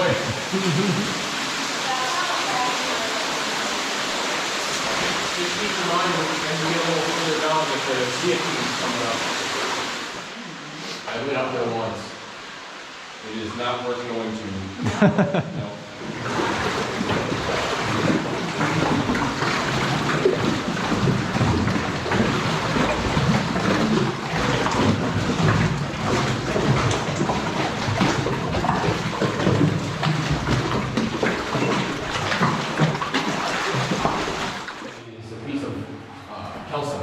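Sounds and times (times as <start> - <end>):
rushing water with splashes: 0.0 - 35.1.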